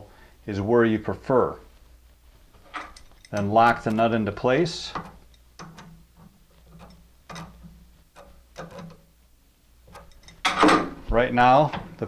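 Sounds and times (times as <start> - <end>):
wrench metallic clicks: 4.8 - 9.0, 9.9 - 10.6.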